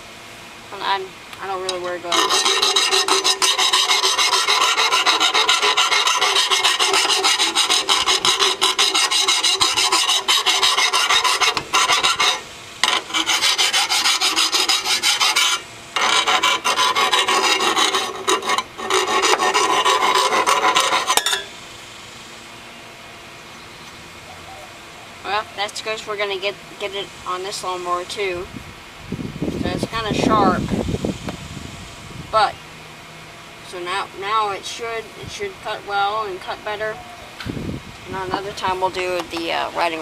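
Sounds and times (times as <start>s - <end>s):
file scraping metal blade: 1.7s - 21.5s.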